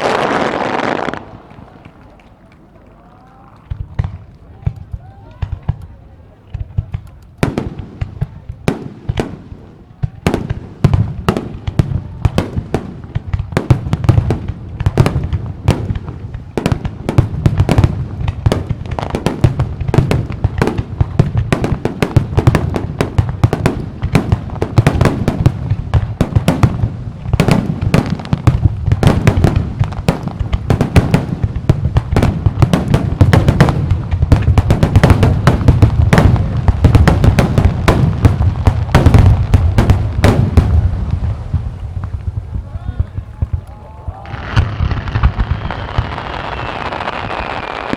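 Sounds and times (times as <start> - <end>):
fireworks bursting and banging: 0.0 - 47.9.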